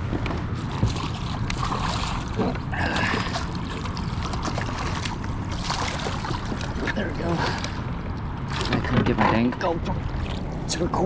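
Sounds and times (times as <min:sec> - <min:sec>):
water splashing and lapping: 0:00.0 - 0:11.0.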